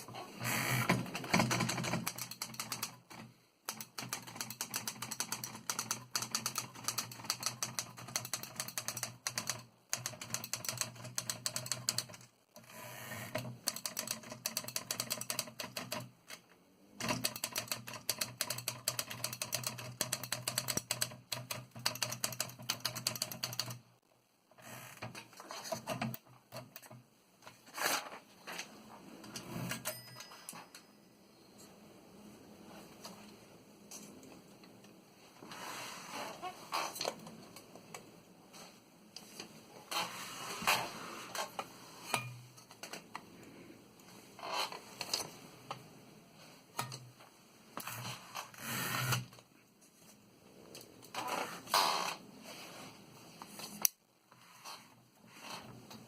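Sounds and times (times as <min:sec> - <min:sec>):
typewriter keystrokes clacking: 0:00.9 - 0:12.2, 0:13.6 - 0:16.1, 0:17.0 - 0:23.8.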